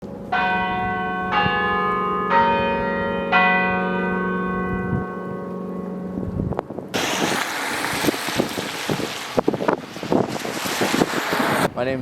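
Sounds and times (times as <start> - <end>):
large bells ringing: 0.0 - 6.9.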